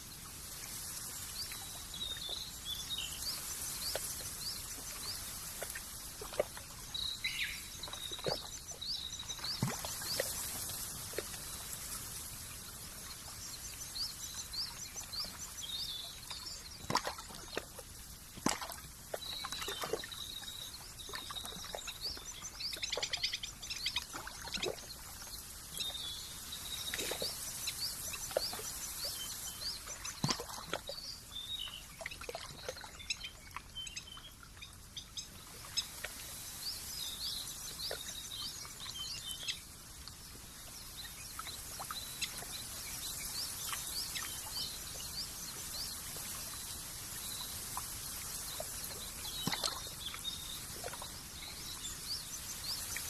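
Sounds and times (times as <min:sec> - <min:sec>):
steady high hiss: 0:00.0 - 0:07.8, 0:09.1 - 0:16.7
small birds chirping: 0:00.7 - 0:53.0.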